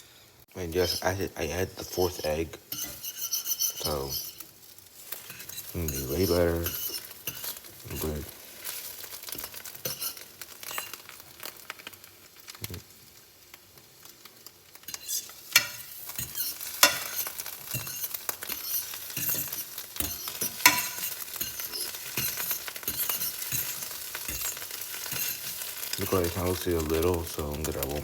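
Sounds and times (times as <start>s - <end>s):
eggs sizzling in frying pan: 0.0s - 28.0s
utensil clicking against pan: 14.9s - 28.0s.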